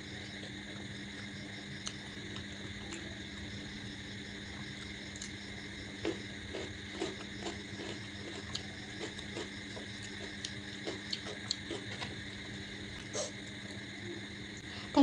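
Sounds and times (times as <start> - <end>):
steady background hum: 0.0 - 15.0
person chewing: 1.8 - 3.1, 4.8 - 13.8.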